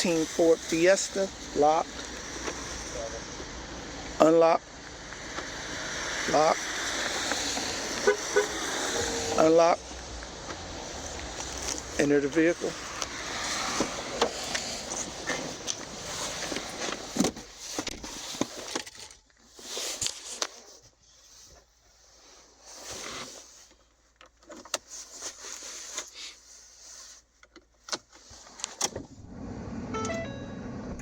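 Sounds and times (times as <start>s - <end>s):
car hum: 0.0s - 17.0s, 29.0s - 31.0s
short pinging tones: 29.9s - 31.0s.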